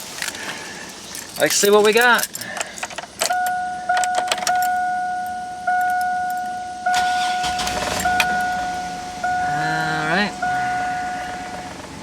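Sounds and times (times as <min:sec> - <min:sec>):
key and ignition clicks: 0:00.1 - 0:09.4
dashboard warning chime dinging: 0:03.2 - 0:12.0
engine cranking and starting: 0:06.9 - 0:12.0.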